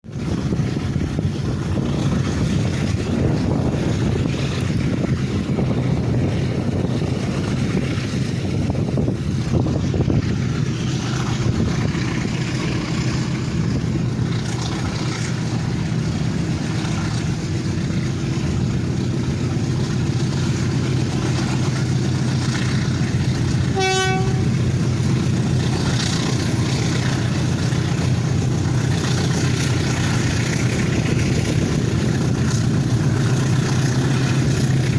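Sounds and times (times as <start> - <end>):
diesel locomotive engine drone: 0.0 - 34.9
locomotive horn toot: 23.7 - 24.7.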